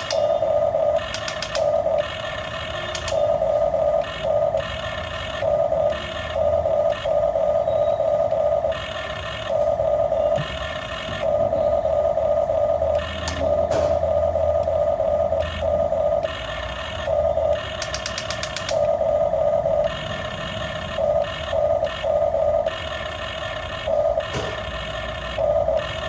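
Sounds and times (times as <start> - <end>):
rapid ticks: 0.0 - 11.4, 12.0 - 19.0, 19.7 - 26.0
toy electric gear motors whining: 0.0 - 26.0.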